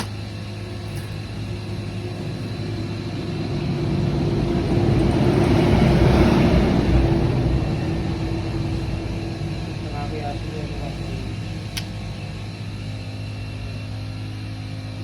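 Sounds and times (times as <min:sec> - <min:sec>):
passing vehicle engine and road noise: 0:00.0 - 0:13.7
steady low hum: 0:00.0 - 0:15.0.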